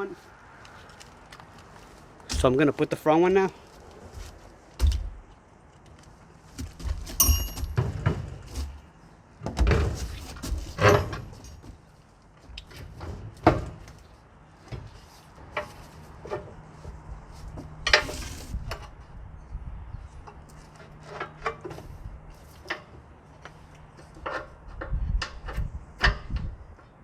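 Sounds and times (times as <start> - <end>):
metal ringing hit: 7.2 - 7.8.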